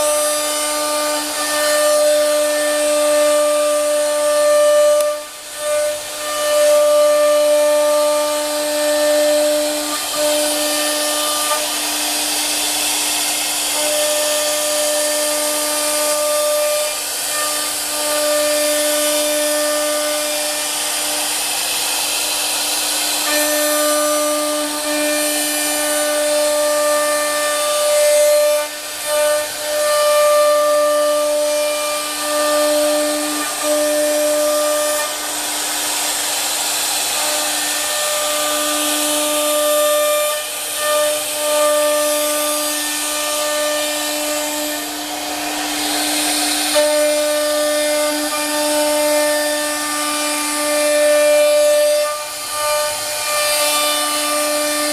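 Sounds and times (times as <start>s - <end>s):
stepper motor tones: 0.0s - 50.8s
router spindle whine and cutting hiss: 0.0s - 54.9s.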